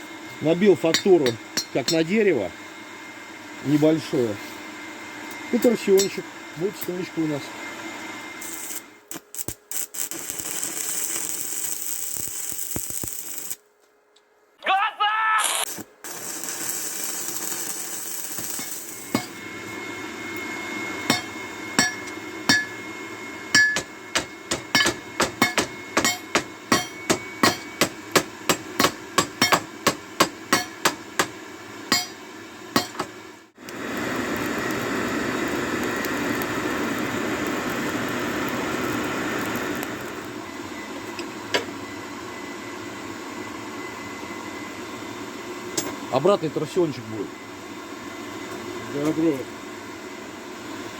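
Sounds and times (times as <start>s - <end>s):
hammer striking steel on anvil: 0.9s - 2.1s, 18.6s - 19.4s, 21.1s - 22.8s, 23.5s - 33.2s.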